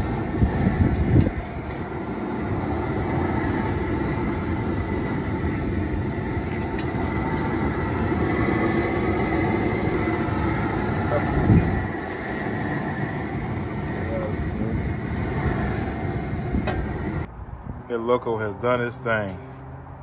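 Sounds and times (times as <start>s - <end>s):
propane burner roaring: 0.0s - 19.5s.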